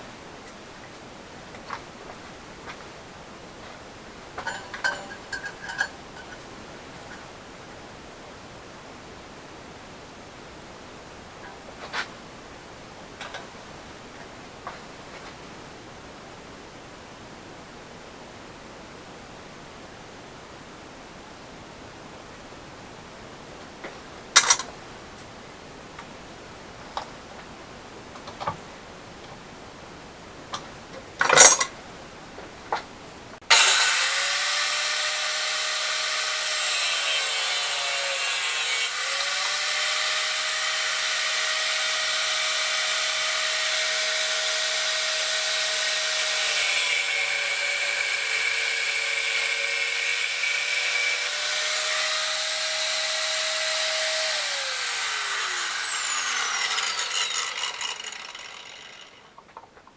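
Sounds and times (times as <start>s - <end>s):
electric power tool whining: 33.5s - 59.4s.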